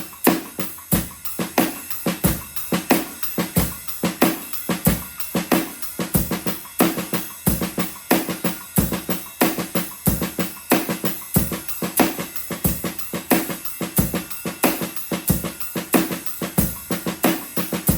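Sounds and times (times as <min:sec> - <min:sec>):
kick drum: 0:00.0 - 0:04.0, 0:04.8 - 0:06.6, 0:07.5 - 0:07.9, 0:08.8 - 0:13.4, 0:14.0 - 0:15.6, 0:16.5 - 0:17.9
cymbal wash: 0:00.0 - 0:17.9.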